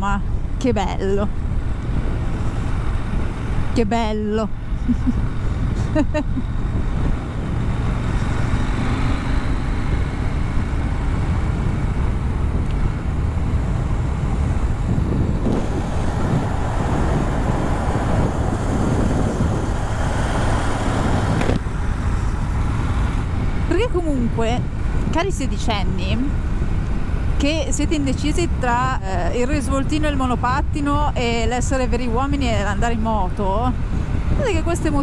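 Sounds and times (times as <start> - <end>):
wind rushing over microphone: 0.0 - 35.0
motorcycle engine running: 1.4 - 27.6.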